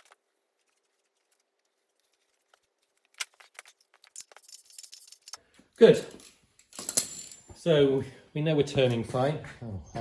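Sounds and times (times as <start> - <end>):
metallic clicks and clinks: 4.0 - 7.5.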